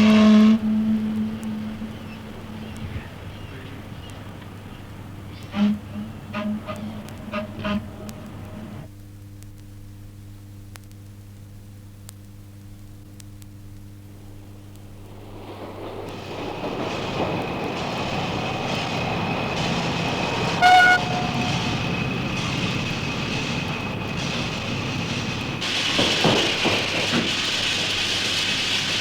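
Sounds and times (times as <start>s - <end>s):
horn toot: 0.0s - 3.8s, 5.3s - 8.9s, 20.4s - 22.5s
rumbling noise: 0.0s - 8.9s, 13.9s - 29.0s
low hum: 0.0s - 10.6s.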